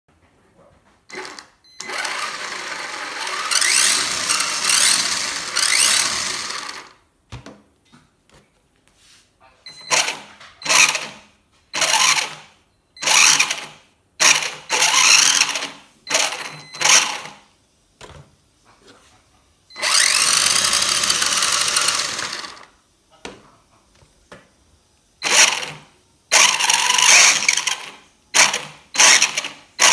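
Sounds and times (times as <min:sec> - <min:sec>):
electric motor whining: 0:01.1 - 0:06.9, 0:19.8 - 0:22.7, 0:26.4 - 0:29.9
gears grinding: 0:01.1 - 0:06.9, 0:09.9 - 0:11.2, 0:13.0 - 0:17.3, 0:19.8 - 0:22.7, 0:25.2 - 0:29.9.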